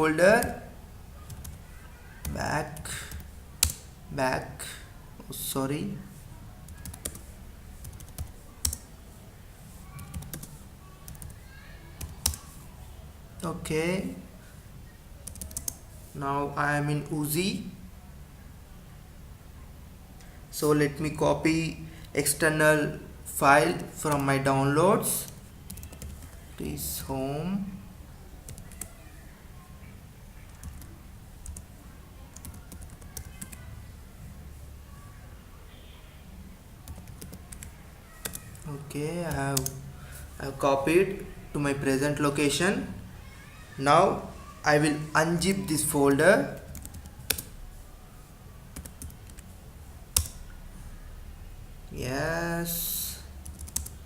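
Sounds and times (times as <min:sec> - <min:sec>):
low steady hum: 0:00.0 - 0:54.0
keyboard typing: 0:01.2 - 0:01.6, 0:02.2 - 0:03.9, 0:06.6 - 0:08.9, 0:09.9 - 0:11.4, 0:12.0 - 0:12.6, 0:15.2 - 0:15.8, 0:25.2 - 0:26.4, 0:28.4 - 0:28.9, 0:30.5 - 0:31.7, 0:32.3 - 0:33.6, 0:36.8 - 0:39.8, 0:46.5 - 0:47.5, 0:48.7 - 0:50.5, 0:53.4 - 0:54.0.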